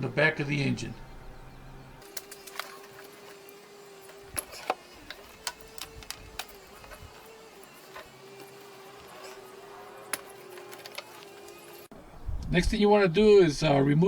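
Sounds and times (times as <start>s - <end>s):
faint hum: 0.0s - 2.8s
electrical connectors clicking: 4.1s - 9.2s.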